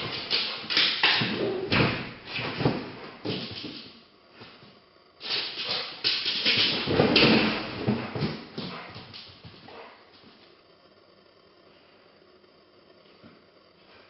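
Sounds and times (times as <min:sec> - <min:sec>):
scuffling and knocks: 0:00.0 - 0:10.4.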